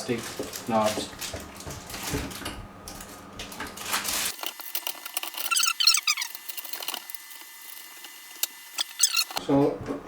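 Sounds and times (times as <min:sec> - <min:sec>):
rustling handling noise: 0:00.0 - 0:07.9
plastic parts squeaking: 0:03.7 - 0:09.4.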